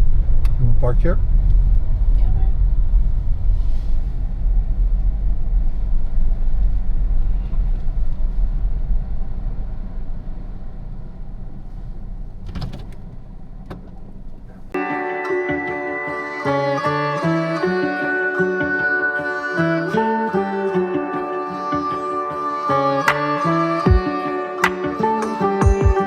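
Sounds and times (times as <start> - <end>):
car road and engine rumble: 0.0 - 14.8
plucked-string music: 13.8 - 26.0.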